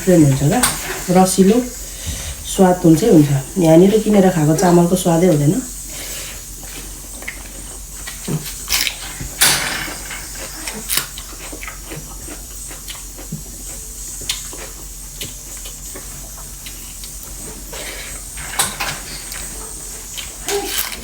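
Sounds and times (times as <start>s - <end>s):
steady background hiss: 0.0s - 21.0s
person chewing food: 10.2s - 18.3s.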